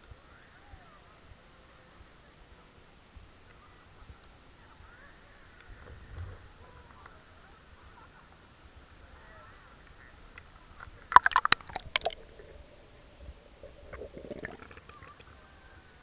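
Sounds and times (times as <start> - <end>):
bath water sloshing and splashing: 11.1 - 15.2.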